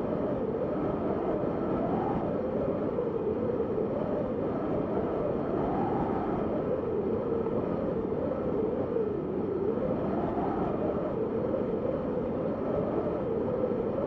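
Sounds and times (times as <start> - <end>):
wind rushing and whistling: 0.0 - 14.0.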